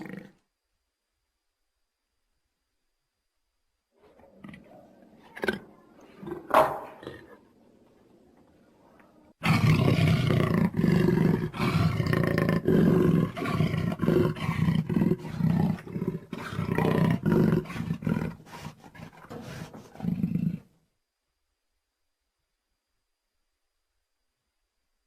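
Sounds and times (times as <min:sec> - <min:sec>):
dinosaur roaring: 0:09.4 - 0:20.7.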